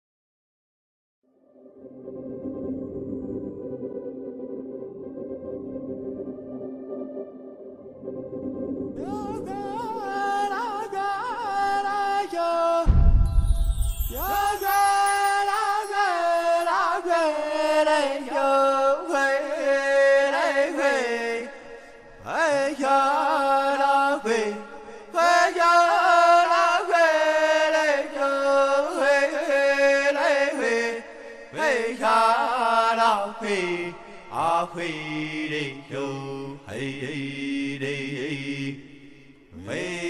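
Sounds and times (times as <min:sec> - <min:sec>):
person singing a chant-like melody: 0:09.0 - 0:40.0
low thump: 0:12.9 - 0:14.8.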